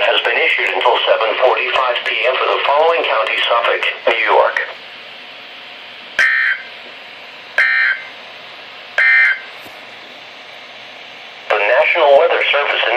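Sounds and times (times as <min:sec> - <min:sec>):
buzzing data bursts: 0:06.2 - 0:06.7, 0:07.6 - 0:08.1, 0:09.0 - 0:09.5.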